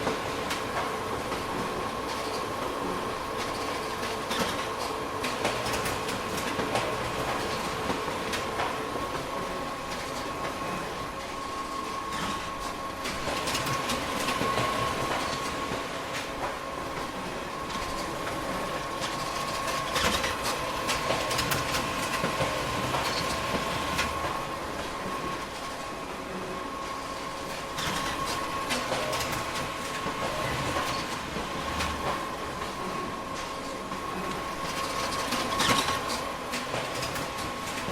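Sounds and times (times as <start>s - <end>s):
constant machine whine: 0.0s - 37.9s
photocopier whirring: 0.0s - 37.9s
machine clicks and clatters: 3.3s - 8.8s, 13.0s - 16.6s, 17.7s - 24.4s, 27.8s - 32.3s, 34.2s - 37.9s.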